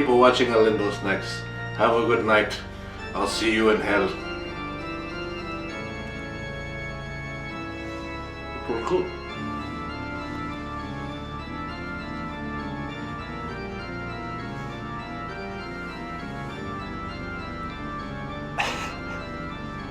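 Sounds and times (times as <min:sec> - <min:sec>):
organ chords: 0:00.0 - 0:19.9.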